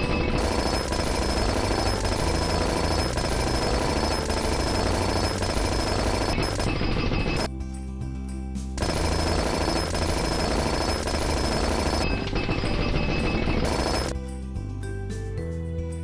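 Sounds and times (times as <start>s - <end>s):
rapid mechanical hammering rattle: 0.0s - 7.5s, 8.8s - 14.1s
background music: 0.0s - 16.0s.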